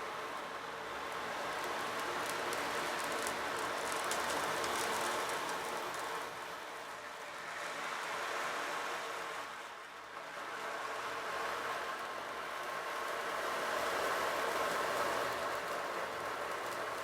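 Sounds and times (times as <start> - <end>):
fizzing surf foam: 0.0 - 9.7.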